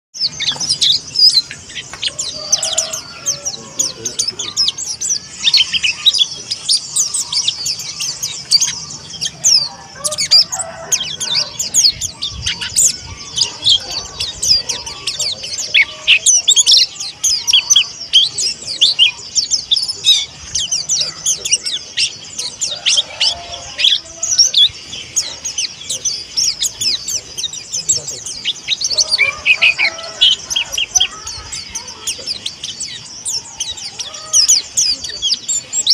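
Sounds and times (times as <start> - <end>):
bird singing rapid high chirps: 0.2 - 35.9.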